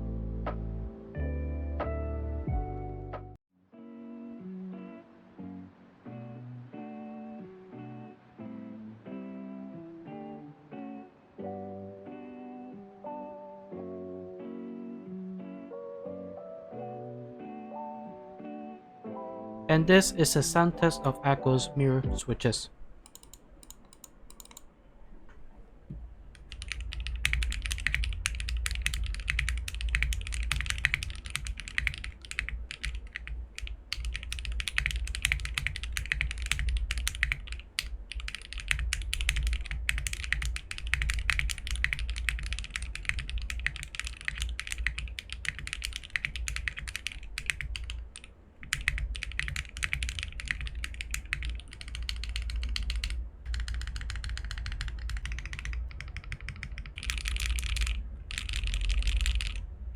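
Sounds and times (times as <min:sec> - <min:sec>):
mechanical keyboard typing: 0:23.0 - 0:24.7, 0:26.4 - 0:59.6.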